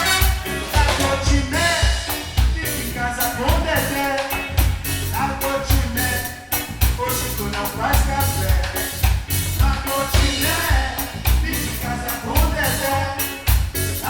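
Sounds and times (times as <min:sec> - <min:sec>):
live band playing: 0:00.0 - 0:14.0
person singing: 0:00.0 - 0:14.0
steady drum beat: 0:00.0 - 0:14.0.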